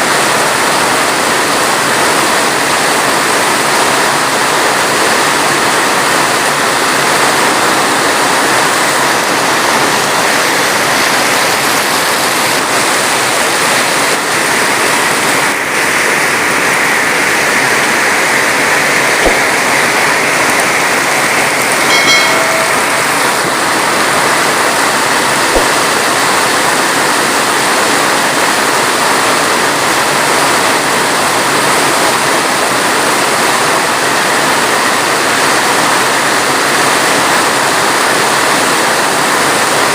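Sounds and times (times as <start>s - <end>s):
heavy rain falling: 0.0s - 39.9s
brief pitched tone: 19.2s - 24.5s.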